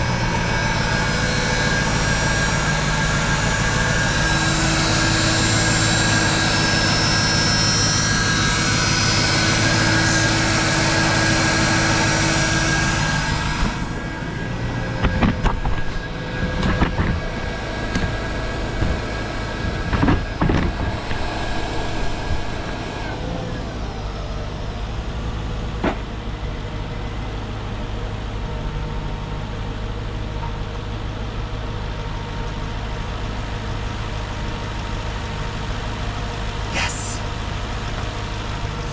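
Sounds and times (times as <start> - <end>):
car engine idling: 0.0 - 38.9
knocks and clunks: 15.0 - 17.3, 17.9 - 22.8, 25.8 - 26.1.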